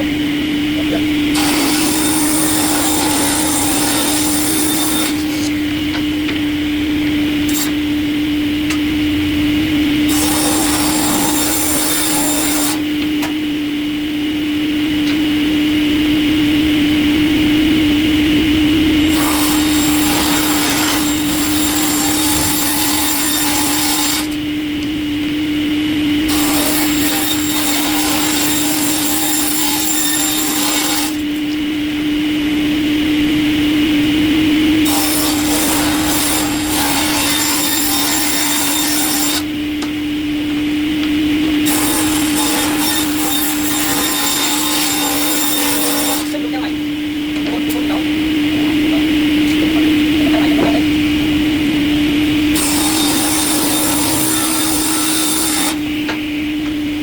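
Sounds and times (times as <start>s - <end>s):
coarse wood-cutting noise: 0.0s - 8.8s, 9.9s - 13.3s, 19.0s - 25.0s, 26.1s - 31.5s, 34.8s - 46.7s, 52.3s - 56.3s
wood-processing machine humming: 0.0s - 57.0s.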